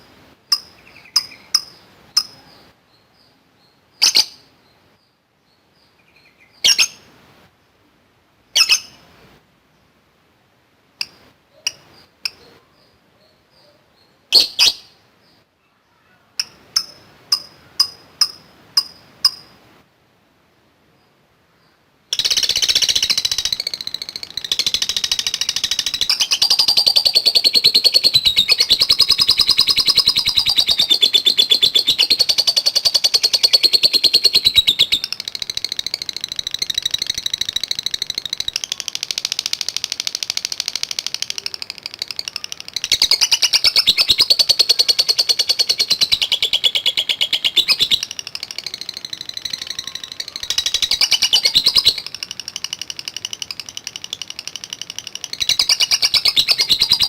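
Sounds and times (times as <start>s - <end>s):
lovebird chirps: 0.0s - 7.1s, 8.5s - 9.0s, 11.0s - 19.6s, 21.0s - 57.0s
lovebird rapid chatter: 0.5s - 2.4s, 22.1s - 57.0s.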